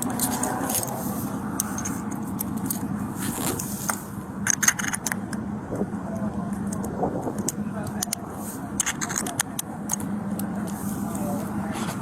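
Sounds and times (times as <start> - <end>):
metallic clicks and jingles: 0.0 - 2.9
vehicle idling: 0.0 - 12.0
clothing rustling: 3.1 - 4.1.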